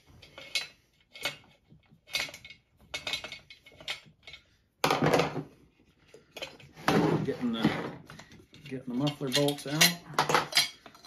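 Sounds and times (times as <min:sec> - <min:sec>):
metal tools clicking and scraping: 0:00.0 - 0:04.6, 0:08.1 - 0:11.0.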